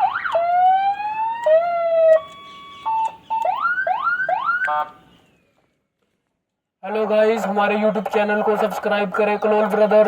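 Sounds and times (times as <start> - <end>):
electronic siren wailing and whooping: 0.0 - 5.0.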